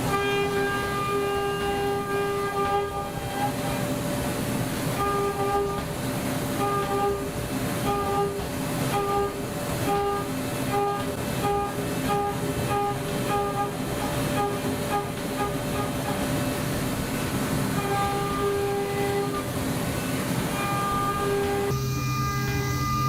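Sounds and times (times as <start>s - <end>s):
end mill cutting whine: 0.0s - 23.0s
milling spindle tone: 4.9s - 5.9s, 6.6s - 16.6s, 17.7s - 19.5s, 20.5s - 23.0s.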